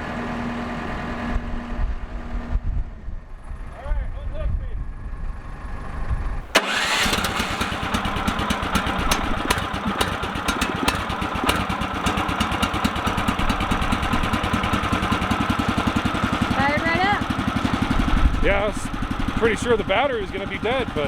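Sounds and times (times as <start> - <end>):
sawmill gasoline engine running: 5.4 - 21.0.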